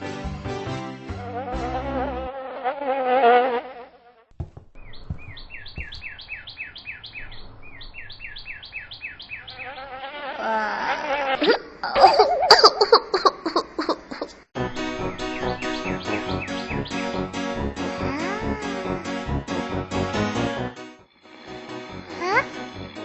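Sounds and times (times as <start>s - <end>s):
background music: 0.0s - 2.2s, 14.6s - 23.0s
cartoon fly buzzing: 1.1s - 4.3s, 9.5s - 11.9s, 18.0s - 19.7s, 21.2s - 23.0s
high falling chirps: 4.8s - 10.0s, 14.6s - 19.8s.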